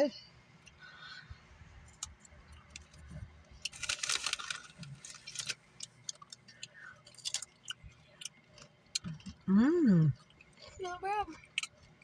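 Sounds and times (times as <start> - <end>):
snack bag rustling: 3.6 - 5.9
chips crackling: 3.6 - 9.0.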